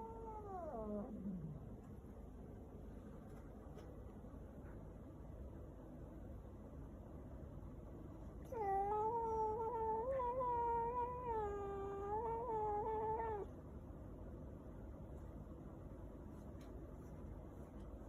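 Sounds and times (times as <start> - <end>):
cat wavering yowl: 0.0 - 1.5, 8.5 - 13.5.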